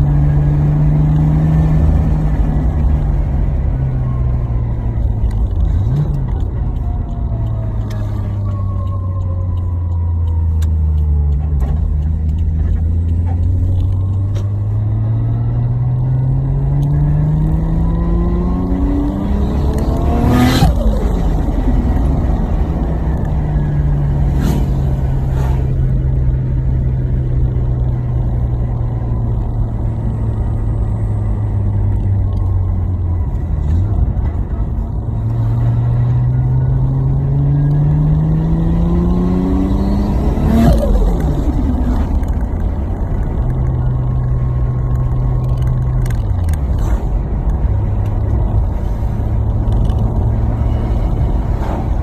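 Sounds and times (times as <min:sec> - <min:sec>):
turbocharged engine revving: 0:10.9 - 0:28.4, 0:33.2 - 0:52.0.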